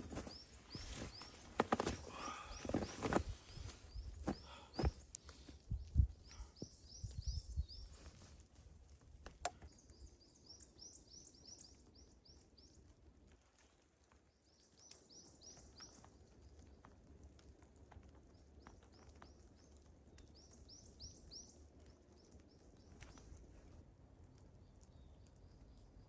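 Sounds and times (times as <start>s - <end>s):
small bird chirping: 0.0s - 8.3s.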